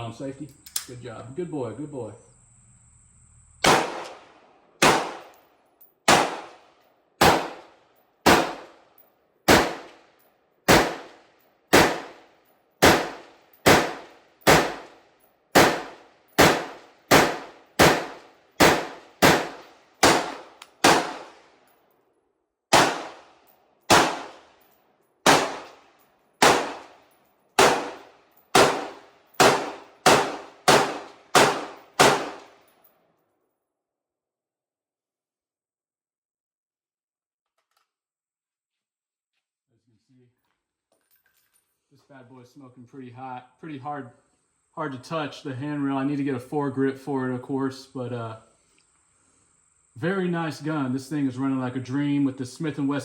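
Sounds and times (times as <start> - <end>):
rifle gunshots: 3.6 - 5.4, 6.1 - 8.9, 9.5 - 10.0, 10.7 - 21.6, 22.7 - 24.6, 25.2 - 27.0, 27.6 - 32.6.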